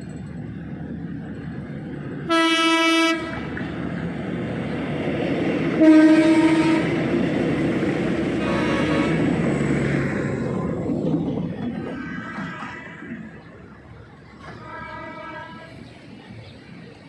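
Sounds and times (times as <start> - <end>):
train rumbling: 0.0 - 17.0
train horn blasts: 2.3 - 3.6, 5.8 - 7.0, 8.4 - 9.4, 14.4 - 15.9.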